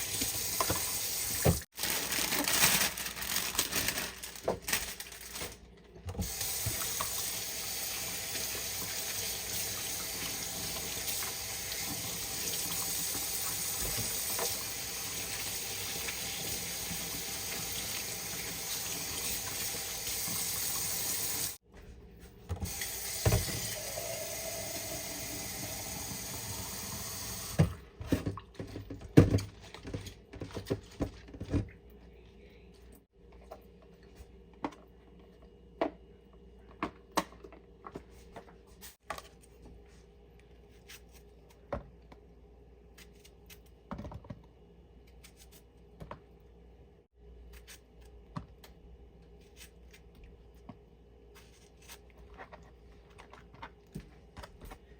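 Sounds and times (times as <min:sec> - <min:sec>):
tap water running into sink: 0:00.0 - 0:01.6, 0:06.2 - 0:21.5, 0:22.7 - 0:27.8.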